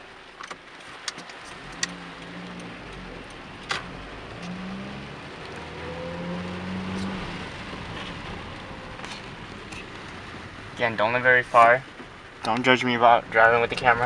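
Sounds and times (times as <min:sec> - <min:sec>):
car engine accelerating: 0:01.3 - 0:11.6.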